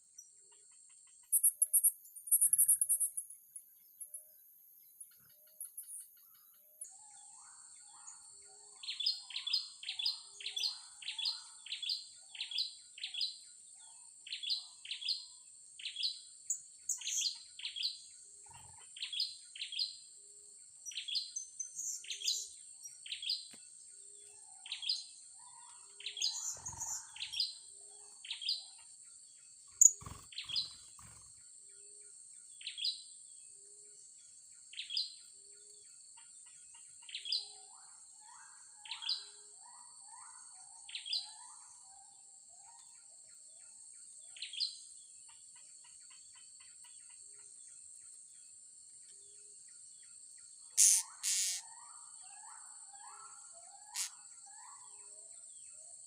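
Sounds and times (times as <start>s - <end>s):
high insect whine: 29.8s - 31.4s, 50.8s - 51.8s, 53.9s - 54.2s
parrots giving sharp high calls: 50.8s - 51.6s.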